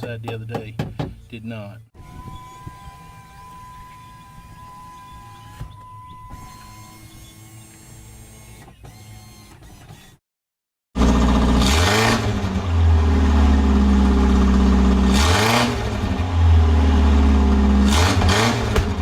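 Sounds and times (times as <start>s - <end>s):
car engine revving: 11.0s - 19.0s.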